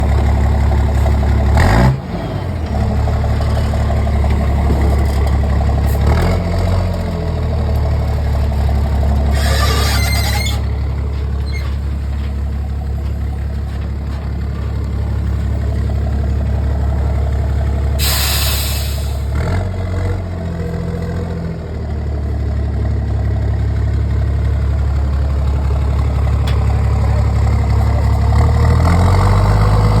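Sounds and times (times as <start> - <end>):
truck diesel engine idling: 0.0 - 19.4, 20.3 - 30.0
air release hisses: 18.0 - 19.2.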